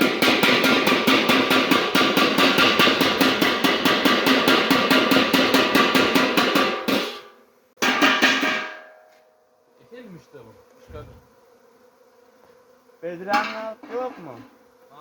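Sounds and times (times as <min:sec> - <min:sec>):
fast drum beat music: 0:00.0 - 0:07.2.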